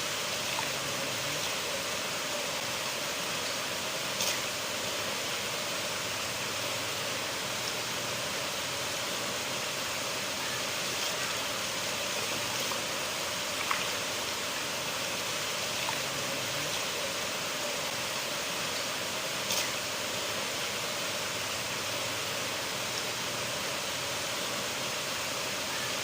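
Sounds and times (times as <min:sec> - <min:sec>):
river water flowing: 0:00.0 - 0:26.0.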